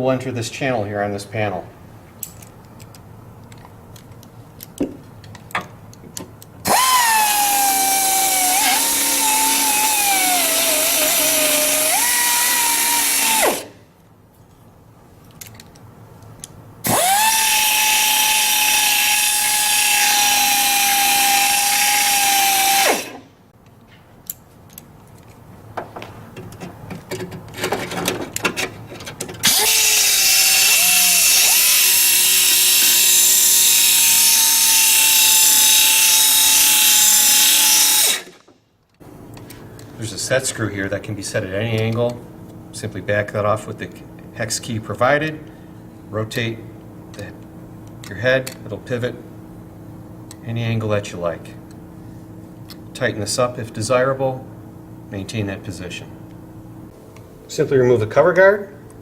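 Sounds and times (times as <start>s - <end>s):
pneumatic belt sander whining: 6.6s - 13.8s, 16.8s - 23.3s, 29.4s - 38.5s.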